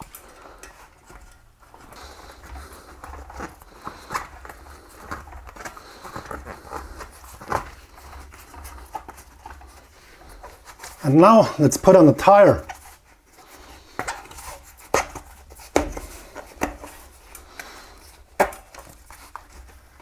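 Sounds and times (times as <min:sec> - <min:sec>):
inner tube rubbing and rustling: 0:00.0 - 0:11.0, 0:12.6 - 0:20.0.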